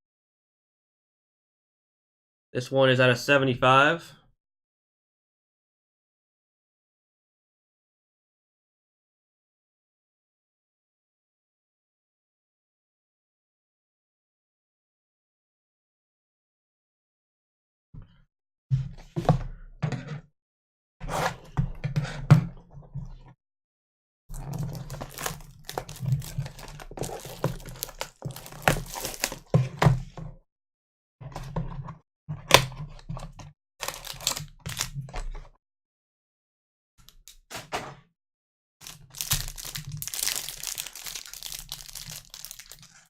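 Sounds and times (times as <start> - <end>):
plastic wrappers crinkling: 24.3 - 29.5, 33.8 - 35.0, 38.8 - 43.0.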